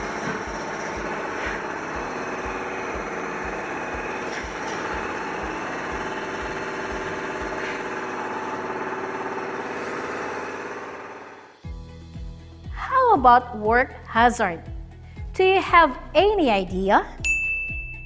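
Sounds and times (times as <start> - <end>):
heavy engine running: 0.0 - 11.6.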